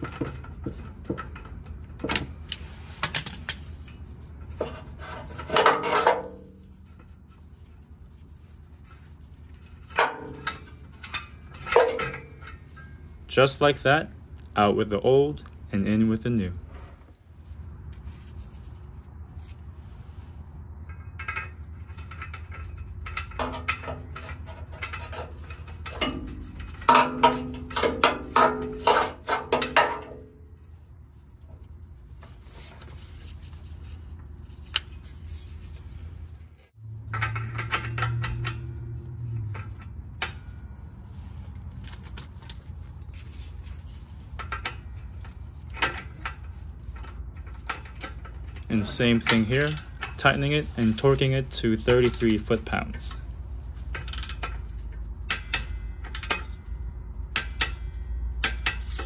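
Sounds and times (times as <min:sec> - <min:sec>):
metal tools clinking: 0:37.0 - 0:59.0.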